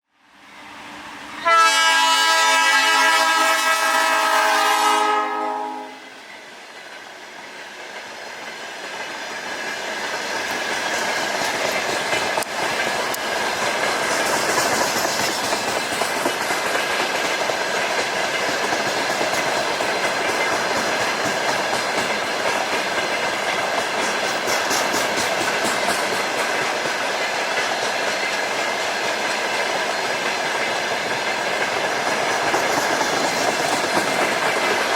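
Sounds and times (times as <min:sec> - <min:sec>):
freight train rumbling past: 0:00.2 - 0:34.9
train air horn blast: 0:01.4 - 0:06.2
wheels clicking over rail joints: 0:08.8 - 0:34.9.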